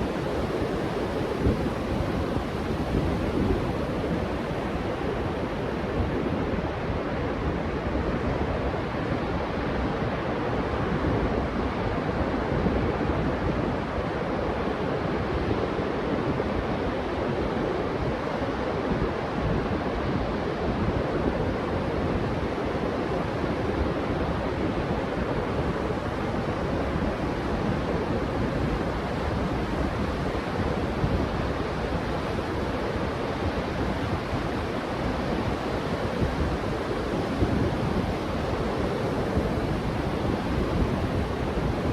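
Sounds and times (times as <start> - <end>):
ocean surf on beach: 0.0 - 41.9
wind on microphone: 0.0 - 41.9.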